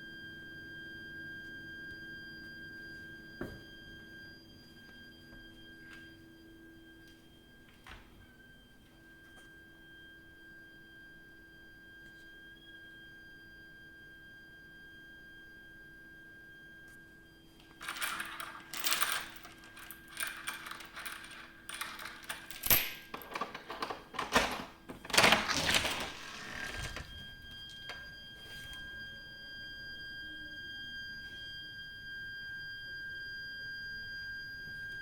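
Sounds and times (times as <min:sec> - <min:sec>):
high-pitched whistling from pipework: 0:00.0 - 0:18.5, 0:26.9 - 0:35.0
loud irregular clattering and knocking: 0:17.8 - 0:27.1.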